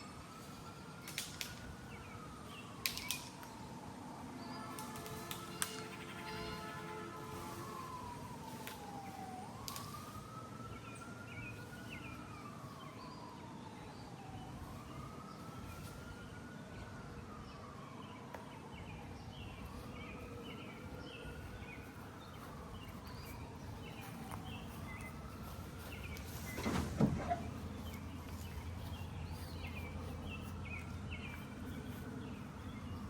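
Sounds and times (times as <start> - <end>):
faint siren wailing: 0.0 - 33.0
outdoor background noise: 0.0 - 33.0.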